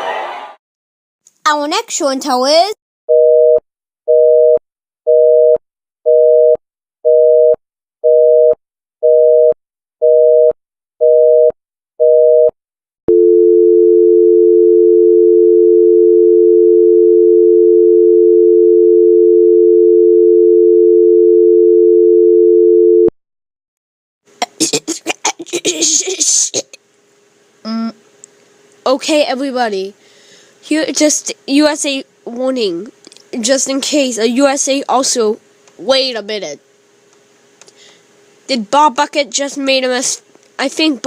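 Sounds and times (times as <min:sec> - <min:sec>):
telephone busy signal: 0:03.1 - 0:23.1
telephone dial tone: 0:03.1 - 0:23.1.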